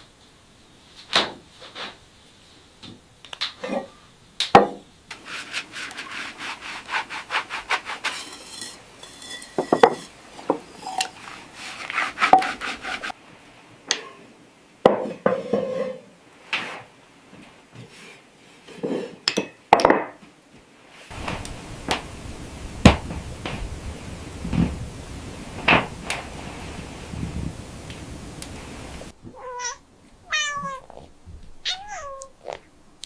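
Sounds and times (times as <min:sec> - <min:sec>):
rubbing and scraping: 0:05.1 - 0:13.2.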